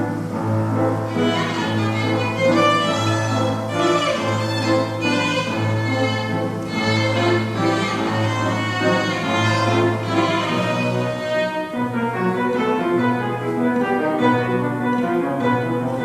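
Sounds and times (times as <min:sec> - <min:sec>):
cello: 0:00.0 - 0:16.0
piano: 0:00.0 - 0:16.0
violin melody: 0:00.0 - 0:16.0.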